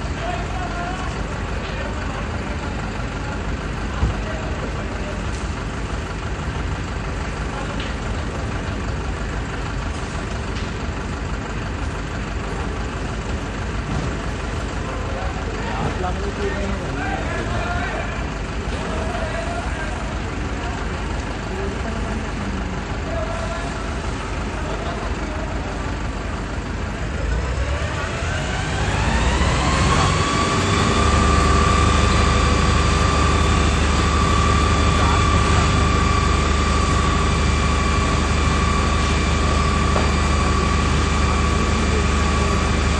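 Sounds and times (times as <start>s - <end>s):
heavy vehicle engine idling: 0.0s - 42.9s
street noise: 0.0s - 42.9s
siren winding up: 27.9s - 41.8s.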